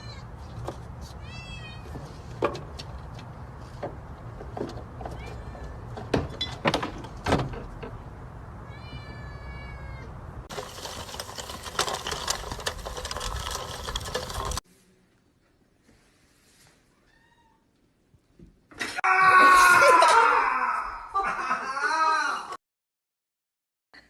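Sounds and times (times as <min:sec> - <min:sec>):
cat meowing: 0:08.7 - 0:10.1.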